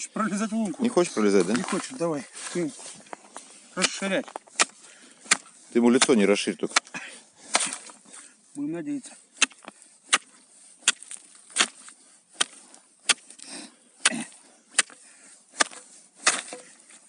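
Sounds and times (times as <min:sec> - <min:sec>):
hand tool chopping ice: 0:07.5 - 0:08.0, 0:09.4 - 0:13.4, 0:14.0 - 0:15.0, 0:15.6 - 0:16.9.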